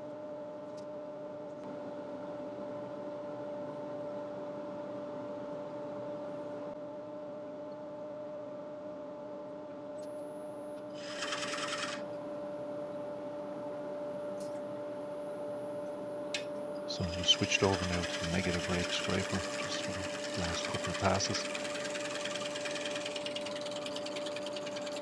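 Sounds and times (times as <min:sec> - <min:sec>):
scraper cutting wood bowl: 0:11.0 - 0:12.0, 0:17.0 - 0:25.0
wood lathe humming: 0:11.0 - 0:12.1, 0:16.9 - 0:25.0.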